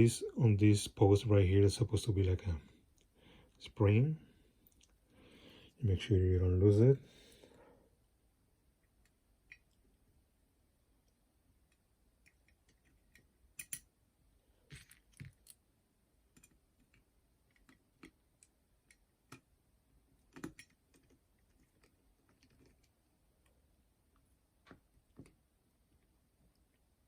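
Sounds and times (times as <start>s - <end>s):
small metal parts clicking: 12.2s - 13.9s.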